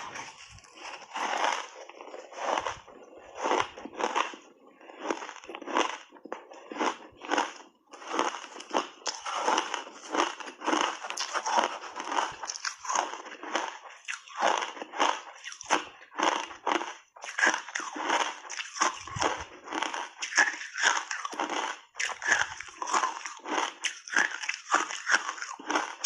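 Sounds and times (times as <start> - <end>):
ice being crunched: 0.0 - 4.4.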